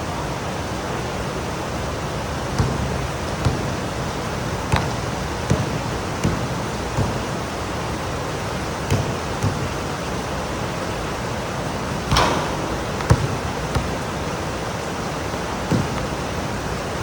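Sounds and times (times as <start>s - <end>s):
sharp tapping knock: 12.1s - 14.0s.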